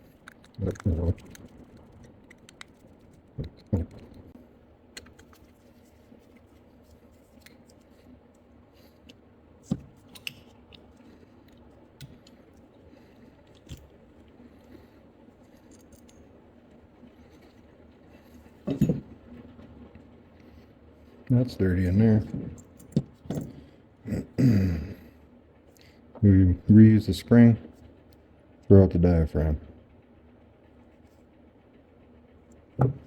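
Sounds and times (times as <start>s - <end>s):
faint steady hum: 0.0s - 33.0s
metal parts and tools clicking: 0.1s - 2.8s.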